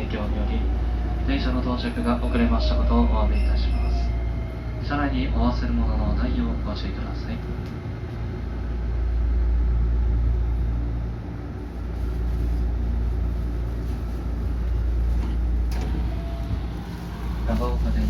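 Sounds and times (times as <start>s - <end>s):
train carriage rumble and hum: 0.0s - 18.0s.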